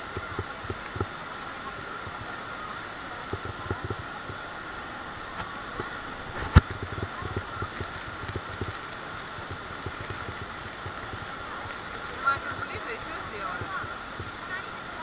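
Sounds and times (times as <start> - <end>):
rushing waterfall: 0.0 - 15.0
wind gusts hitting microphone: 3.1 - 14.6.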